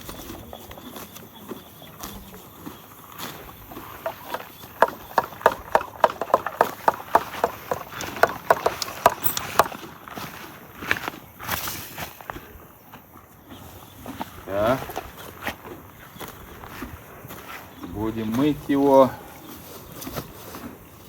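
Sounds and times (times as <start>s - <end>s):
horse hooves clopping on hard ground: 0.0s - 11.2s.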